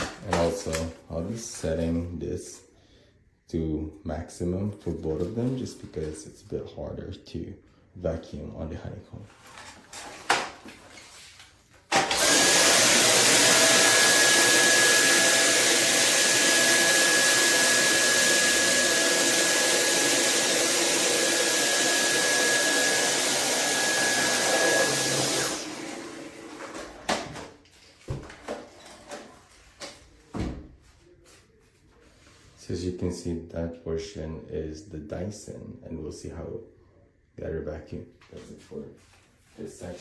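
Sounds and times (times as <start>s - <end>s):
vacuum cleaner whining: 11.9s - 27.5s.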